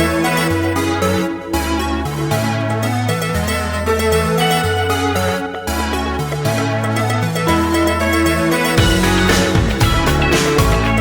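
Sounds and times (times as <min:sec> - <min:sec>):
upbeat electronic music: 0:00.0 - 0:11.0
drums: 0:08.6 - 0:11.0.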